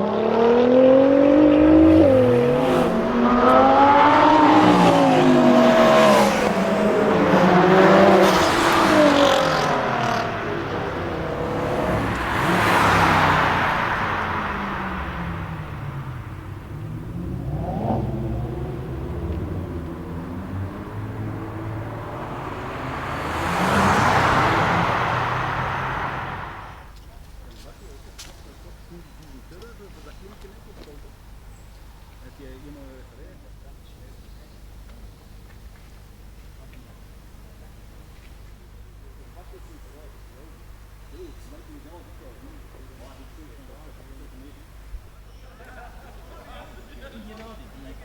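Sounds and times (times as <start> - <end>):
car engine accelerating hard: 0.0 - 26.9.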